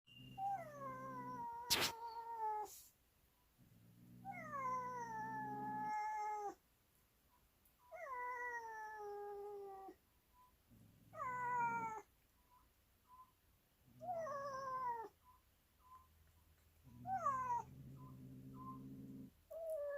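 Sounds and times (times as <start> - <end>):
cat yowling: 0.2 - 2.7, 4.2 - 6.6, 11.1 - 12.1, 16.9 - 19.9
cat growling: 0.2 - 2.8, 3.6 - 6.6, 10.7 - 12.1, 16.8 - 19.9
sharp click: 1.7 - 2.0.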